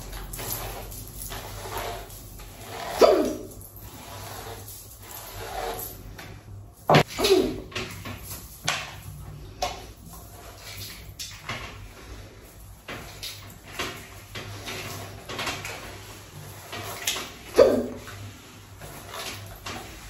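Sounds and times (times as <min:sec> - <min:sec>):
short sharp hiccups: 0:17.6 - 0:18.0.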